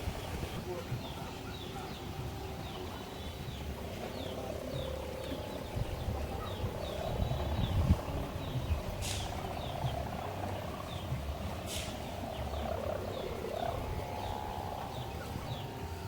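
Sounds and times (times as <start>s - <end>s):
kite hummer droning: 0.0s - 16.0s
low rumble: 2.1s - 16.0s
hissy swishes: 8.8s - 14.5s.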